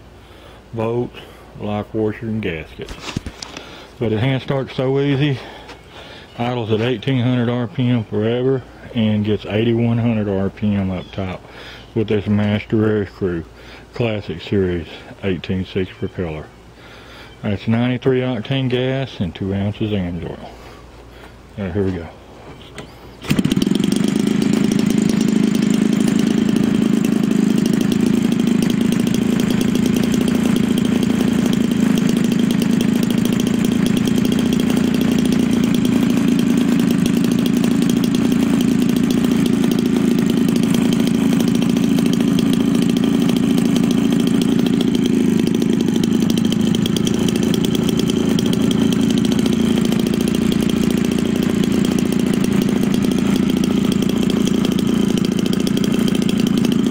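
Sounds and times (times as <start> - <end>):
two-stroke engine running: 2.9 - 13.2, 23.1 - 56.9.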